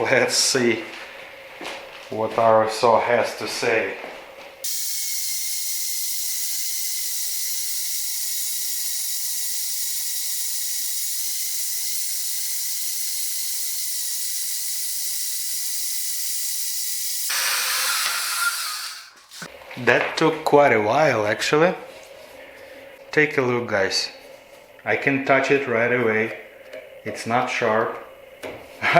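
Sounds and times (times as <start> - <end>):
bandsaw grinding through metal: 4.7 - 19.5.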